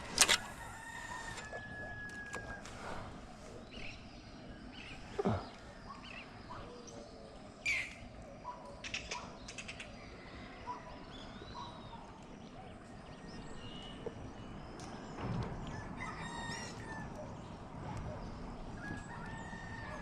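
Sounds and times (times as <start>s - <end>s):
quick run of clicks: 0.0s - 2.8s.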